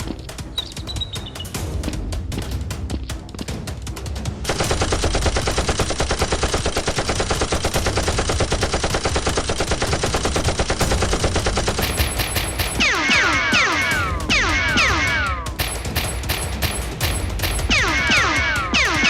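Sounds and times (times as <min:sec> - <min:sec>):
rapid automatic gunfire: 0:04.4 - 0:14.9, 0:15.5 - 0:19.0.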